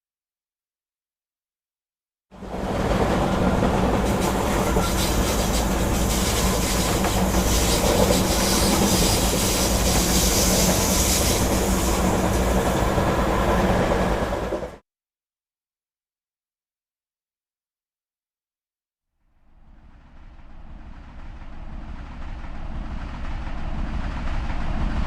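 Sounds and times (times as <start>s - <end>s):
train rumbling on track: 2.3s - 14.8s, 19.4s - 25.0s.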